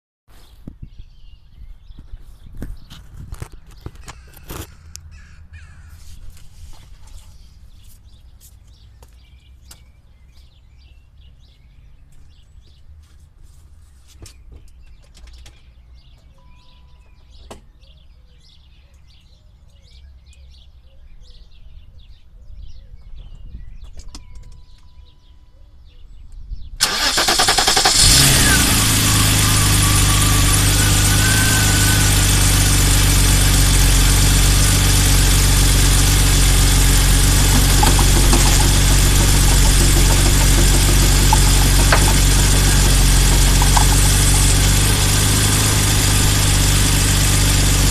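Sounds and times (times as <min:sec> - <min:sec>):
car engine starting and idling: 0:26.8 - 0:47.9.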